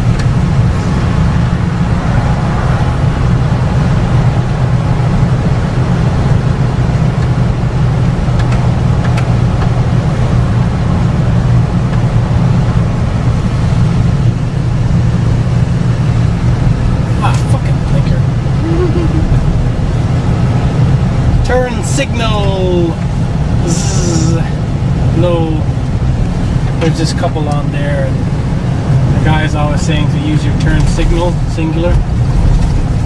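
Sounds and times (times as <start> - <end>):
car engine and road drone: 0.0 - 33.0.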